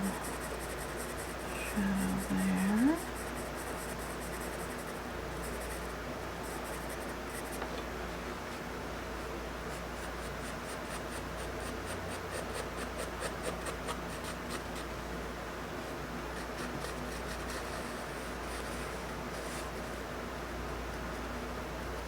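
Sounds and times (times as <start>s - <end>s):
charcoal scratching on paper: 0.0s - 5.9s, 9.7s - 14.9s, 16.4s - 19.8s.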